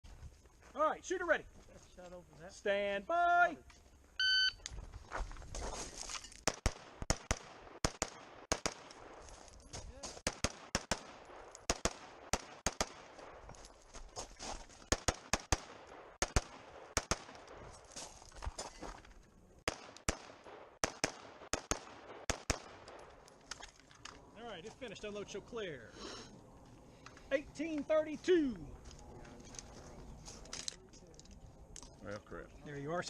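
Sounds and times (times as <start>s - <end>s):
rifle firing rapidly: 19.7s - 22.8s.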